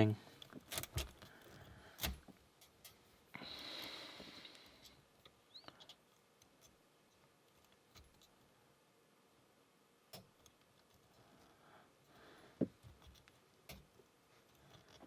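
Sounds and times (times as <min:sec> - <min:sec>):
lock pick clicking and scratching: 0:00.4 - 0:03.0.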